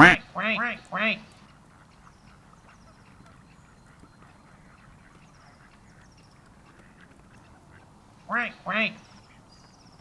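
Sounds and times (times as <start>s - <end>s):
loud duck quacks: 0.0s - 1.2s, 8.3s - 9.0s
distant duck calls: 0.0s - 9.4s.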